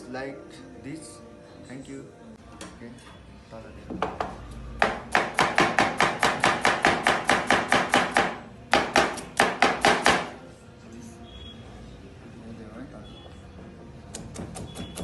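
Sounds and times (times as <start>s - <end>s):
knife chopping on cutting board: 4.0s - 10.4s.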